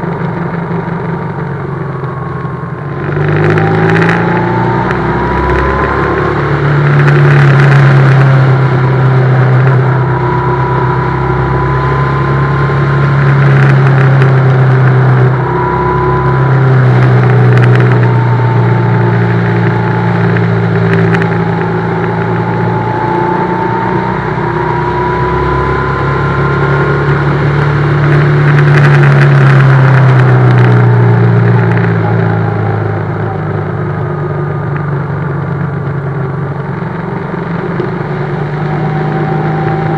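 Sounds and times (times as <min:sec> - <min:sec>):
motorcycle engine under load: 0:00.0 - 0:39.9
wind noise: 0:00.0 - 0:39.9.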